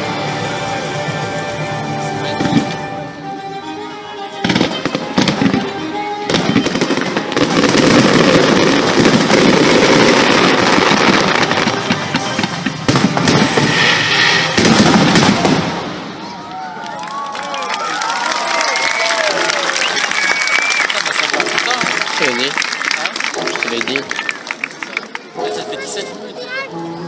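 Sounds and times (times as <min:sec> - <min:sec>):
music playing: 0:00.0 - 0:13.0, 0:21.0 - 0:27.0
fireworks bursting and crackling: 0:04.3 - 0:17.2, 0:18.6 - 0:26.1.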